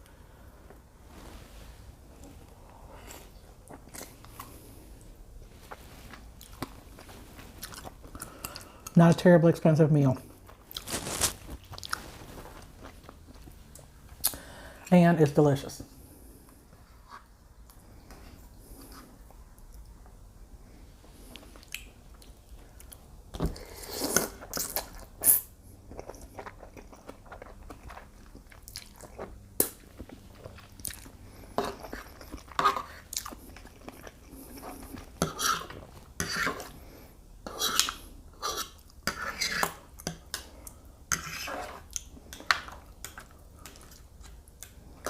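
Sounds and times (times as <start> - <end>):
close chewing and eating: 2.2 - 9.3, 10.1 - 14.4, 21.1 - 45.0.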